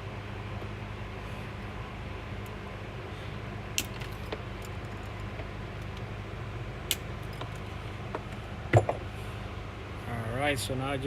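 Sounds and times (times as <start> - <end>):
steady low hum: 0.0 - 11.0
sharp clicks and knocks: 6.9 - 9.0.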